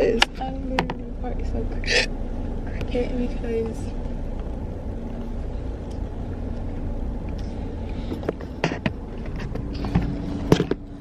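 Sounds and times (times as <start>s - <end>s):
car interior engine rumble: 0.0s - 11.0s
sharp clicks and knocks: 8.1s - 10.8s.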